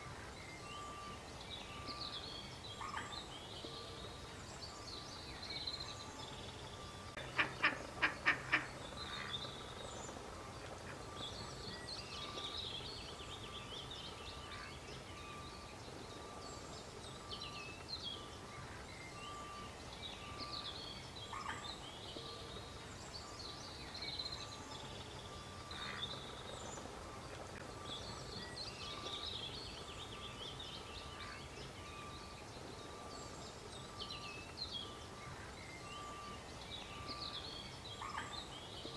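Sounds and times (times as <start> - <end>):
ducklings peeping: 7.2 - 10.2.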